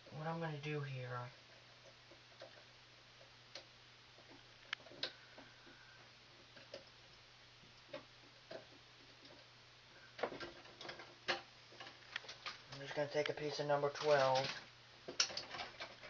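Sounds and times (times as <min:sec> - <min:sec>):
faint steady hum: 0:00.0 - 0:16.0
clicks and taps handling wires: 0:10.2 - 0:16.0.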